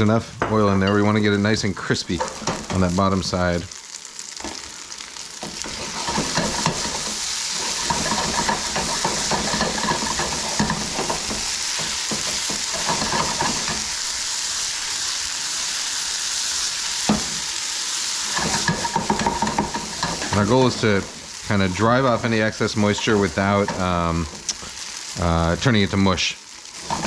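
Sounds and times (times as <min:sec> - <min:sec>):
food sizzling in a skillet: 0:00.0 - 0:27.0
utensil scraping a pan: 0:05.5 - 0:13.9, 0:18.3 - 0:21.0, 0:26.8 - 0:27.0.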